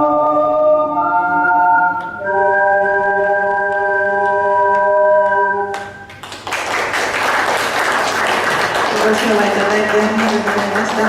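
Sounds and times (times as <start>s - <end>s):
ocarina ensemble chord: 0.0s - 6.1s
audience applause: 6.1s - 11.0s.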